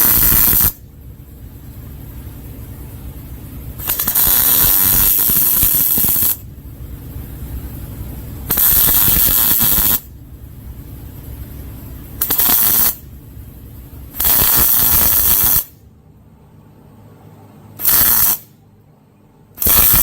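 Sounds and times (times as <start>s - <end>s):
mig welding: 0.0s - 0.8s, 3.8s - 6.4s, 8.5s - 10.1s, 12.2s - 13.1s, 14.2s - 15.8s, 17.8s - 18.5s, 19.6s - 20.0s
low hum: 0.0s - 17.8s.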